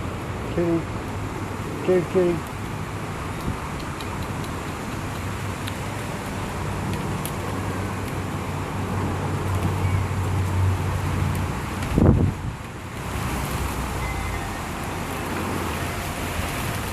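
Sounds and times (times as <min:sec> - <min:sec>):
rain hiss: 0:00.0 - 0:16.9.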